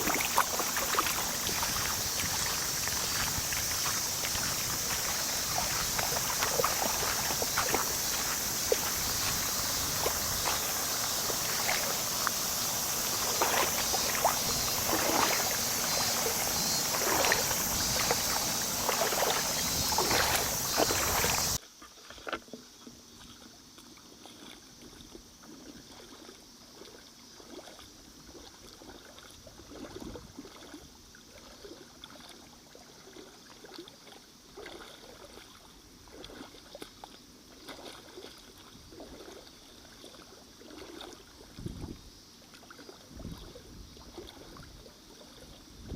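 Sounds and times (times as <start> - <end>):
steady high hiss: 0.0 - 21.6
water splashing and lapping: 0.0 - 22.5, 23.2 - 41.9, 42.5 - 45.6.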